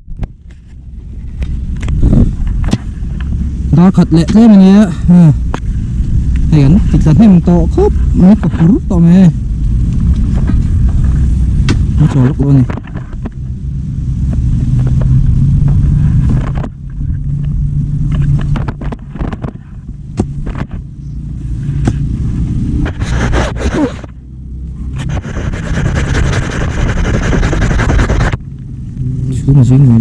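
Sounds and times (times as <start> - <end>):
heavy engine running: 0.0 - 29.9
knocks and clatter: 18.1 - 19.6
scraping noise: 22.7 - 24.1, 24.9 - 28.4.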